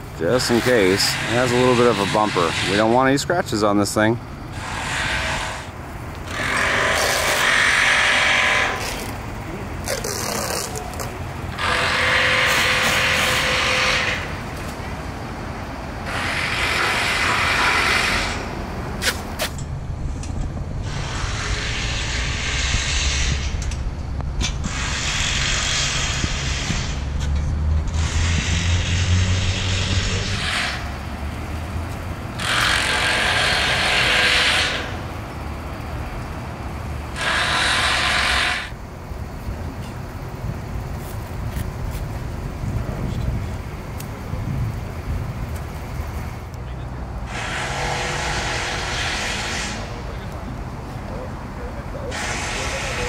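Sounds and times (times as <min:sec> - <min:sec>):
heavy machinery engine rumbling: 0:00.0 - 0:53.0
hissing bursts: 0:04.5 - 0:14.4, 0:16.0 - 0:19.6, 0:20.8 - 0:23.6, 0:24.4 - 0:27.2, 0:27.9 - 0:30.9, 0:37.2 - 0:38.8, 0:47.3 - 0:50.2, 0:52.1 - 0:53.0.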